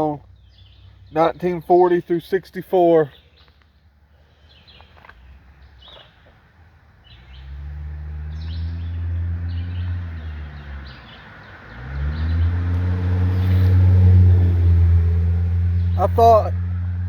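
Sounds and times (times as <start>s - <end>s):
birds chirping: 0.0s - 14.8s, 15.7s - 16.5s
vehicle engine passing: 7.0s - 17.0s.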